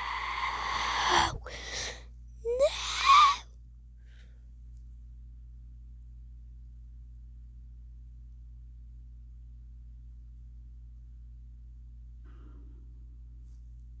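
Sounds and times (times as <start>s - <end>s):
person crying out: 0.0s - 1.5s, 2.4s - 3.4s
person gasping wheezily: 0.0s - 3.4s
faint low hum: 0.0s - 14.0s.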